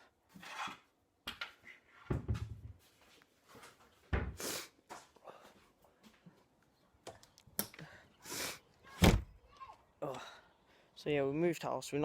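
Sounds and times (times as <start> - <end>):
knocks and thuds: 9.0 - 9.3.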